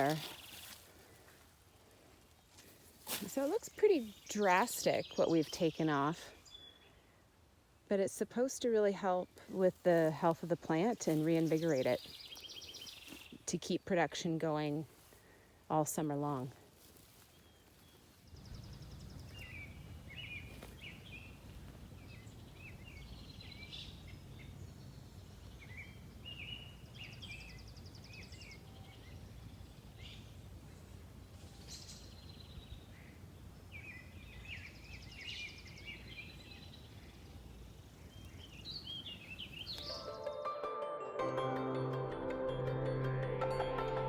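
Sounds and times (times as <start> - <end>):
songbirds chirping and singing: 0.0 - 0.8, 3.4 - 7.0, 8.1 - 14.1, 15.9 - 40.3.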